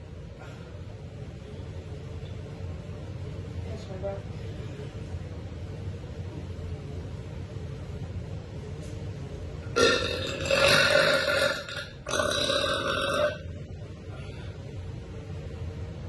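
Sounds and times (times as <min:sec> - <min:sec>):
woman burping: 0:09.8 - 0:13.4.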